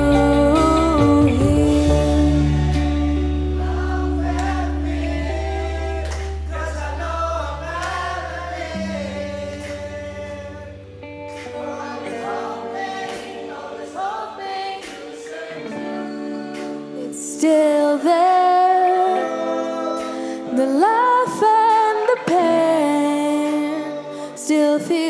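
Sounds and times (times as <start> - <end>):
bass: 0.0 - 12.3
held keyboard chords: 0.0 - 21.7
layered singing: 0.0 - 25.0.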